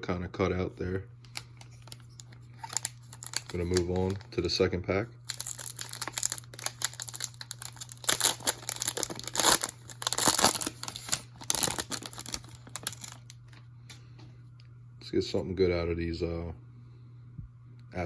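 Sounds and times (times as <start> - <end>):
plastic wrapper crinkling: 1.3 - 4.6, 5.2 - 13.6.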